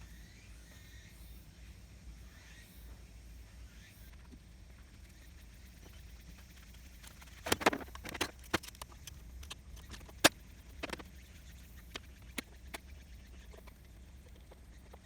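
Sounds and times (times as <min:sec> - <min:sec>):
clicks and knocks of handling: 0:07.0 - 0:11.1.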